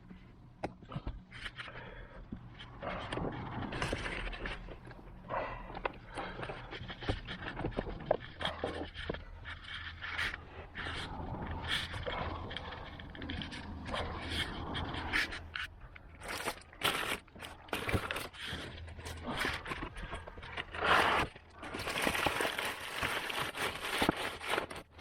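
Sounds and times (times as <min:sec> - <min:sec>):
rustling: 0:00.9 - 0:25.0
hands scraping filter parts: 0:05.7 - 0:25.0.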